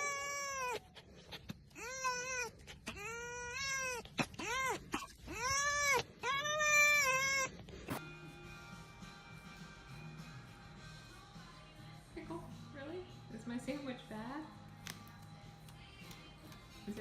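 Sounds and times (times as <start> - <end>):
cat meowing: 0.0 - 0.9, 1.8 - 7.6
faint background music: 3.3 - 17.0.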